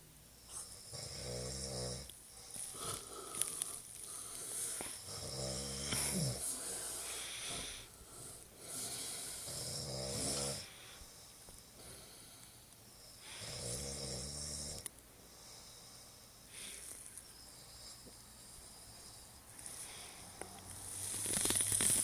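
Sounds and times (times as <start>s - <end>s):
man snoring: 0.8s - 2.1s, 2.7s - 10.8s, 13.2s - 14.9s
faint breath: 2.3s - 5.1s, 5.9s - 9.6s, 10.6s - 13.6s, 15.2s - 21.4s.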